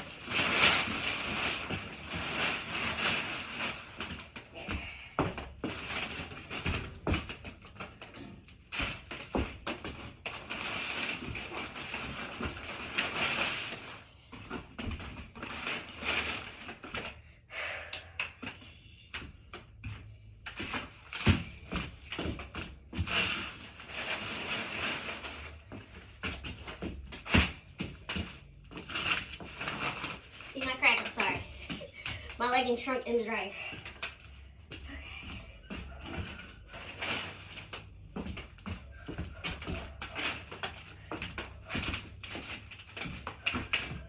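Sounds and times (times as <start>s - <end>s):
rustling and crinkling: 0.0s - 17.4s, 18.3s - 44.0s.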